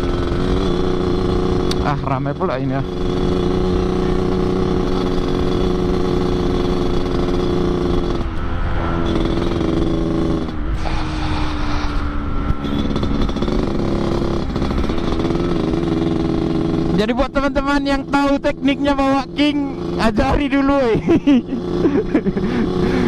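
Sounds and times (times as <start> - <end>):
motorcycle engine growling: 0.0 - 23.0.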